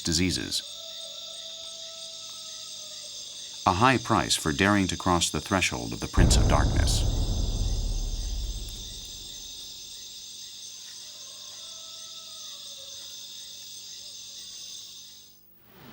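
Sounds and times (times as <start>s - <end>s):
deep rumble: 6.2s - 9.6s.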